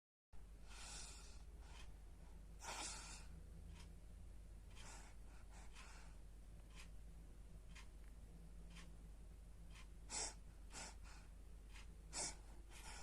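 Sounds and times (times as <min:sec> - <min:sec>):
baby breathing with light snores: 0:00.6 - 0:01.9, 0:02.6 - 0:03.3, 0:10.1 - 0:11.3, 0:12.1 - 0:13.0.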